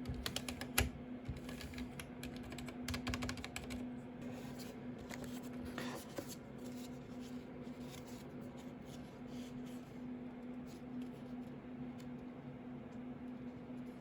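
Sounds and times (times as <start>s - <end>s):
soft keyboard keystrokes: 0.0s - 3.8s
steady low hum: 0.0s - 14.0s.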